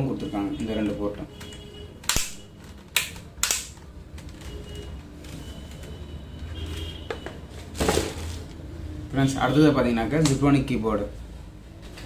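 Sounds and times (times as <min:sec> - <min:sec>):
plastic keyboard clicks: 0:01.4 - 0:04.6.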